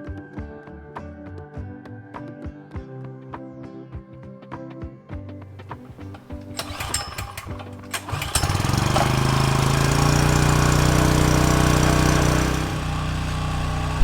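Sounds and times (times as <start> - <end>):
generator engine running: 6.0 - 14.0.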